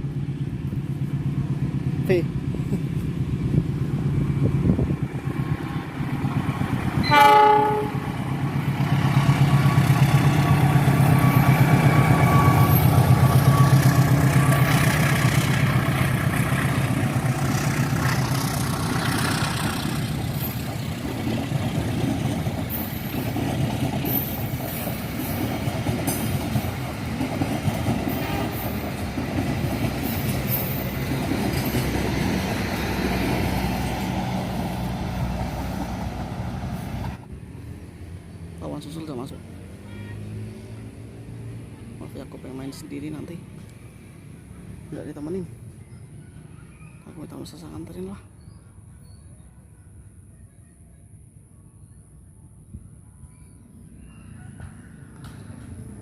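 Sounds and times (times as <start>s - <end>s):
train rumbling past: 0.0s - 48.4s, 53.3s - 56.0s
locomotive horn blast: 7.0s - 8.2s, 28.1s - 28.8s.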